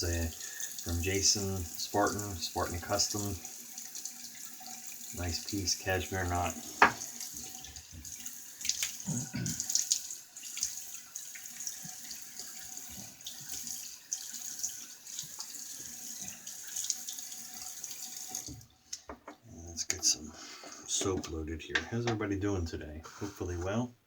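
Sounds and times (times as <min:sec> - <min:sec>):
tap running into sink: 0:06.0 - 0:09.9.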